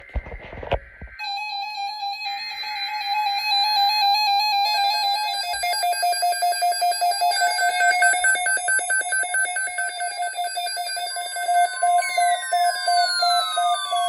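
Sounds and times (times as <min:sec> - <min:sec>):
fast pulsing alarm beep: 0:01.2 - 0:14.0.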